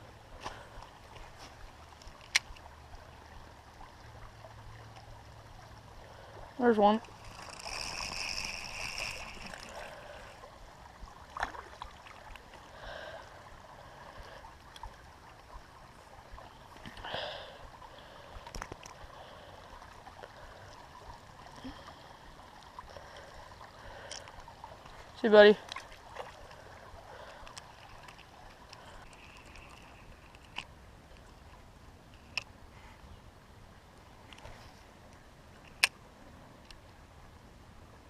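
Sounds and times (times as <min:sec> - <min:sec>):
trickling creek water: 0:00.0 - 0:38.0.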